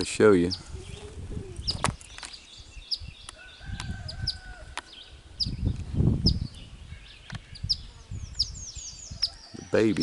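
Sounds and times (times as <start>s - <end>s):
small birds chirping: 0.0s - 10.0s
rooster crowing: 3.4s - 4.8s.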